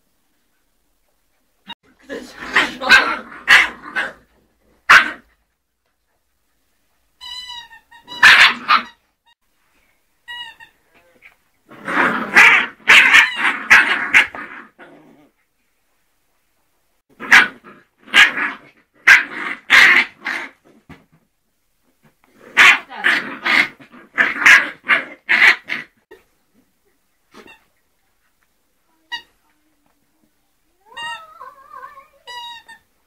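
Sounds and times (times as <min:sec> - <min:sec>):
puppies yapping: 0:07.7 - 0:09.0.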